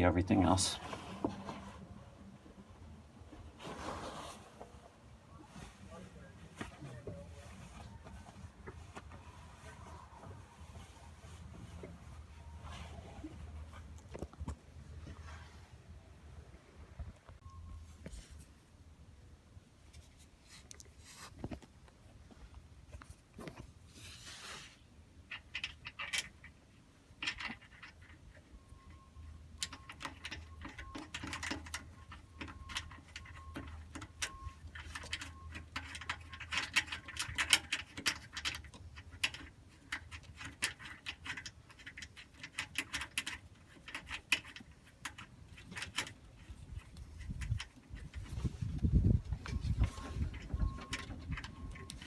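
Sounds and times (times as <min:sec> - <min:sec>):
metal parts clicking and rattling: 0:25.3 - 0:48.6, 0:49.4 - 0:52.0.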